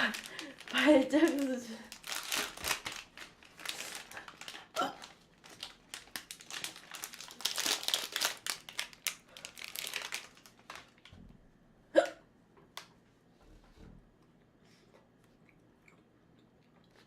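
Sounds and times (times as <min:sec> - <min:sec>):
crinkling and rustling: 0:00.0 - 0:11.4
woman hiccuping: 0:11.9 - 0:12.3.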